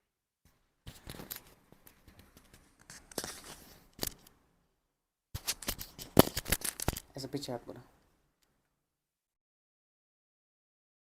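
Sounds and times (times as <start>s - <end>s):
clothing rustling: 0.5s - 4.3s.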